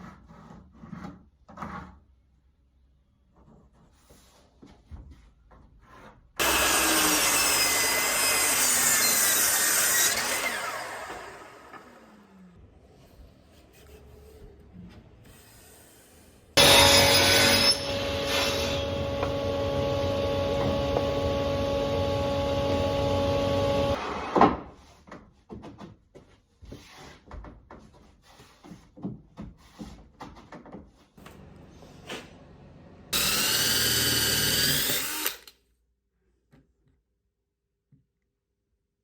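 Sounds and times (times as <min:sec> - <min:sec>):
power tool whining: 0:06.4 - 0:12.5, 0:16.6 - 0:24.4, 0:33.2 - 0:35.5.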